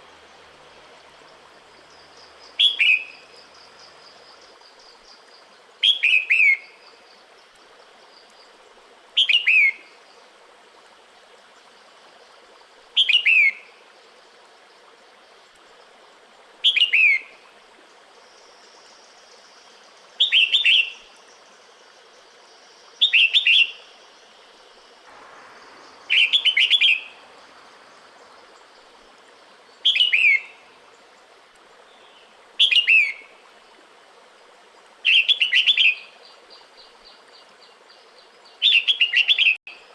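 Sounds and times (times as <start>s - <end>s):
faint steady hiss: 0.0s - 39.9s
bird calling: 25.1s - 30.7s.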